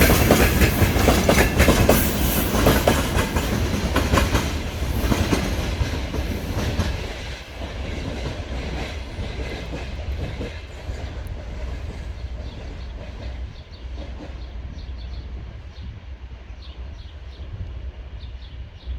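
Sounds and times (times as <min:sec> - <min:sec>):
wheels clacking over rail joints: 0:00.0 - 0:14.5
freight train rolling past: 0:00.0 - 0:18.9.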